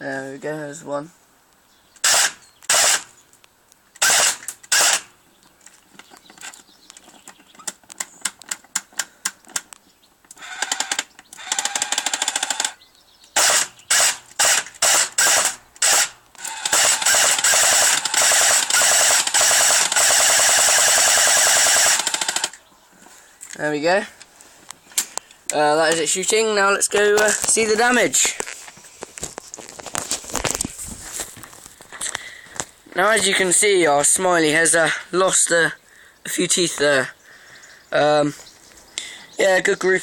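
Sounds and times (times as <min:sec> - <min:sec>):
airsoft gun firing: 0:02.0 - 0:03.1, 0:04.0 - 0:05.1, 0:10.6 - 0:12.8, 0:13.4 - 0:22.5.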